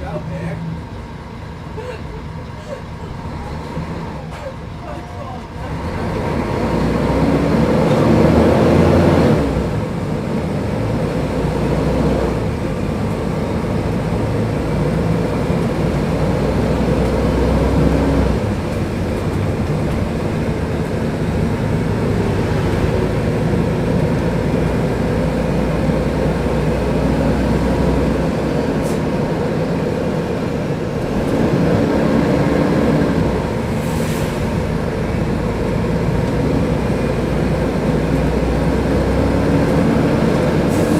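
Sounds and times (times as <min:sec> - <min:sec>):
bus diesel engine running: 0:00.0 - 0:40.9.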